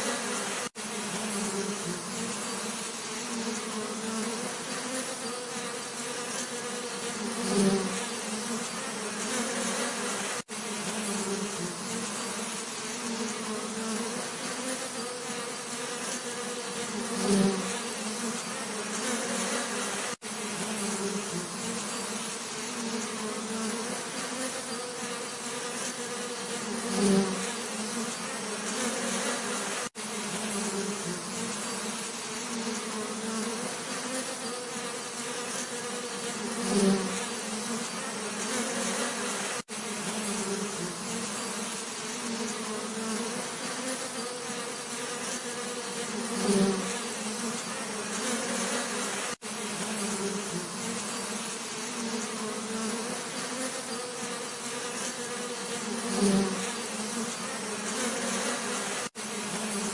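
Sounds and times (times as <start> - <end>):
bees buzzing: 0.0 - 59.9.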